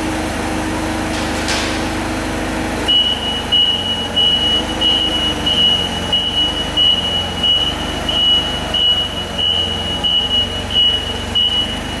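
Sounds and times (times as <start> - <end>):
engine running: 0.0 - 12.0
back-up alarm beeping: 2.9 - 12.0.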